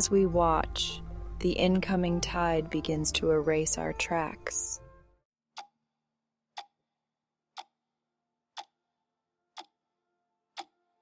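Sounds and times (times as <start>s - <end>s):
clock ticking: 8.6s - 8.8s.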